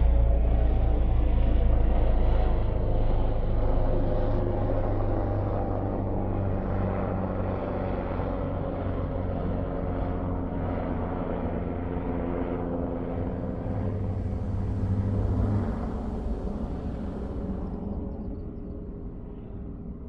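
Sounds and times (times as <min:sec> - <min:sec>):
motor engine humming: 0:11.0 - 0:19.0.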